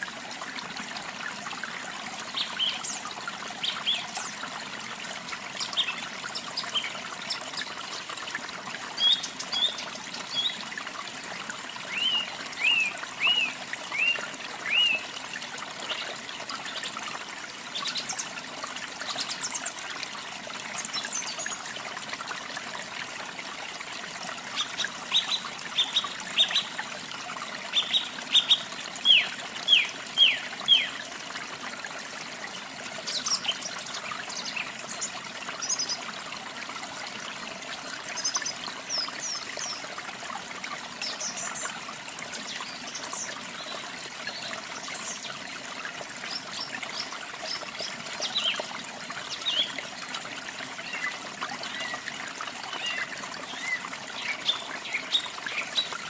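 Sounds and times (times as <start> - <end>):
water trickling: 0.0 - 56.0.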